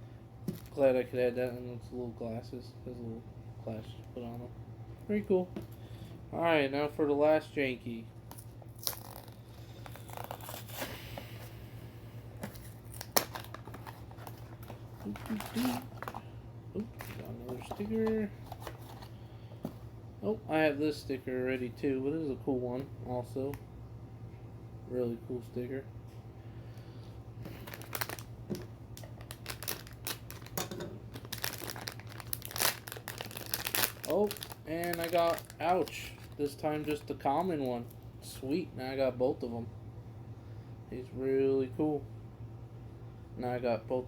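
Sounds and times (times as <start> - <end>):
plastic wrapping crinkling: 8.3 - 11.0, 12.5 - 19.1, 27.5 - 37.9.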